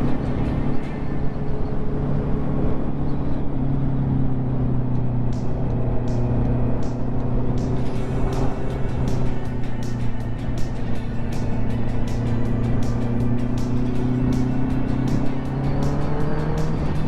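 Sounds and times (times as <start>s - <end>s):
road and wind noise: 0.0s - 17.0s
motorcycle engine running: 4.3s - 17.0s.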